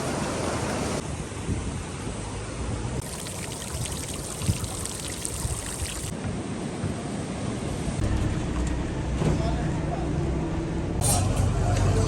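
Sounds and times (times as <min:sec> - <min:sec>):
rushing river water: 0:00.0 - 0:01.0, 0:03.0 - 0:06.2
crisp fizzing: 0:03.0 - 0:06.1.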